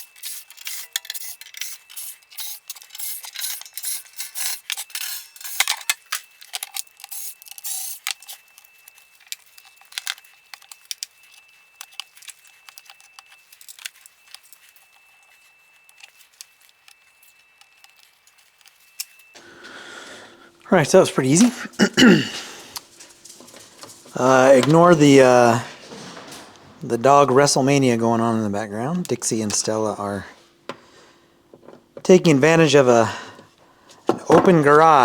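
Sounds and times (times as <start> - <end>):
clicks and small metallic rattles: 0.0 - 19.4, 22.7 - 25.1.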